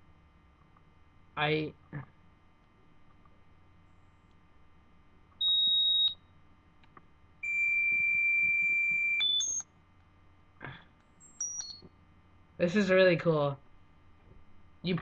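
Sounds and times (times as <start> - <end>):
electronic tones from small speaker: 5.4 - 6.2, 7.4 - 9.6, 11.3 - 11.8.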